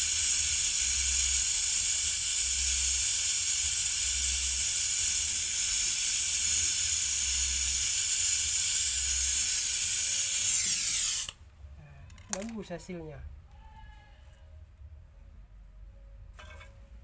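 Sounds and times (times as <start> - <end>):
torch flame hissing: 0.0 - 11.4.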